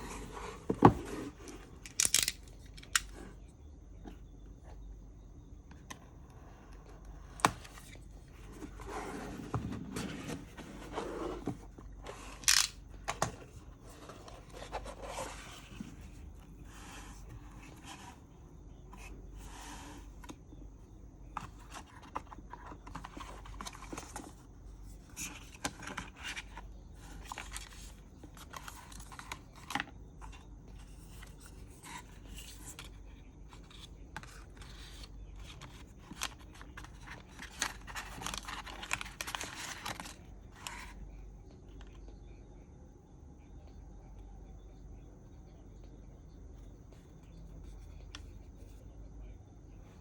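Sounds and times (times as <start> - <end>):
packaging rustling and scraping: 0.0 - 3.3, 7.5 - 18.2, 21.4 - 41.0.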